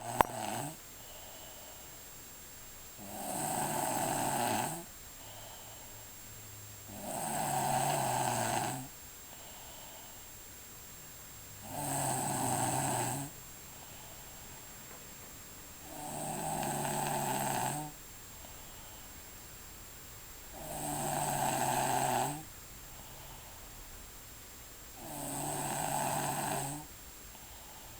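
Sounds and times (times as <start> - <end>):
loud rasping snoring: 0.0 - 0.8, 3.0 - 4.9, 6.9 - 8.9, 11.6 - 13.4, 15.8 - 18.0, 20.5 - 22.5, 25.0 - 26.9.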